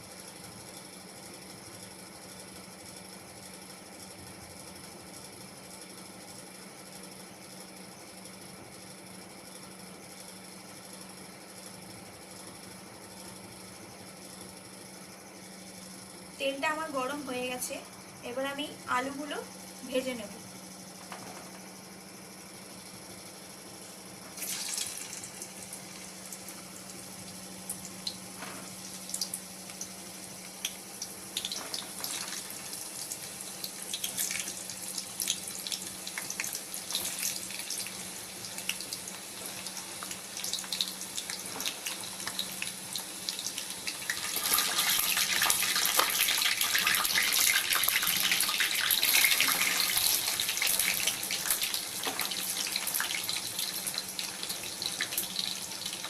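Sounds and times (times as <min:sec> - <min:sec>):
potatoes sizzling in hot oil: 0:24.4 - 0:56.0.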